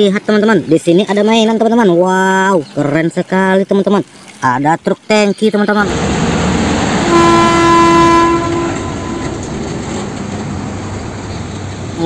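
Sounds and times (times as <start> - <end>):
large vehicle rumbling: 5.8 - 12.0
horn blast: 6.8 - 9.8.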